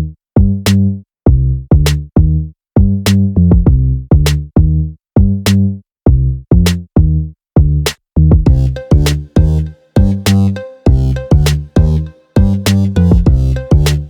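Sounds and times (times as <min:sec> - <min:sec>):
punchy bass notes: 0:00.0 - 0:14.0
drum machine beat: 0:06.1 - 0:06.8, 0:07.6 - 0:14.0.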